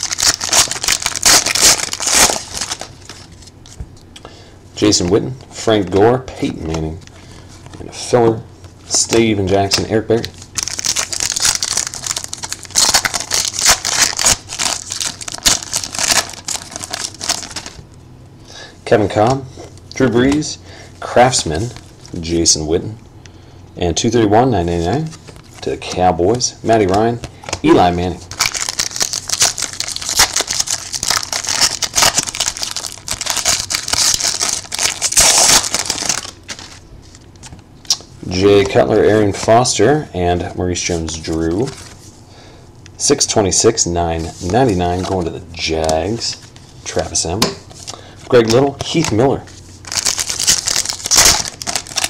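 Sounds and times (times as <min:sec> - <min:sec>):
wrapper crinkling and tearing: 0:00.0 - 0:03.6, 0:09.0 - 0:17.8, 0:28.2 - 0:38.0, 0:47.7 - 0:52.0
cards rustling: 0:00.0 - 0:04.0, 0:08.9 - 0:17.8, 0:24.8 - 0:39.5, 0:41.0 - 0:42.1, 0:44.2 - 0:52.0.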